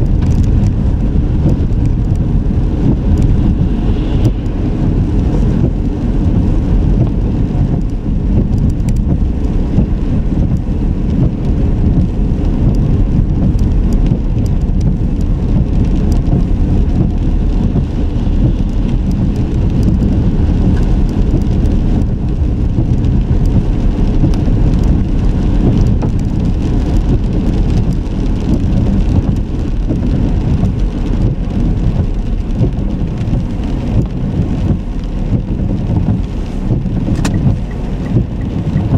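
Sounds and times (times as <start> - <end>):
car road and tyre noise: 0.0 - 38.9
faint light ticks: 7.8 - 9.6.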